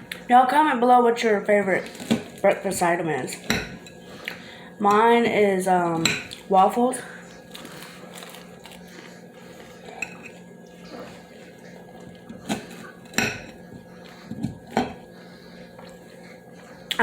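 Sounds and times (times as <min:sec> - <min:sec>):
faint steady hum: 0:00.0 - 0:17.0
cutlery clinking against a plate: 0:09.9 - 0:10.4.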